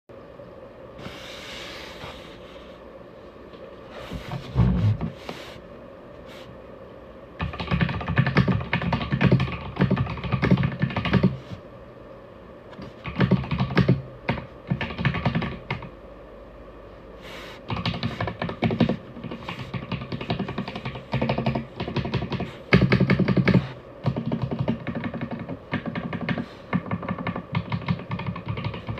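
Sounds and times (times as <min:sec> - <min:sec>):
mechanical keyboard typing: 0:07.4 - 0:11.4, 0:12.8 - 0:15.9, 0:17.7 - 0:28.9.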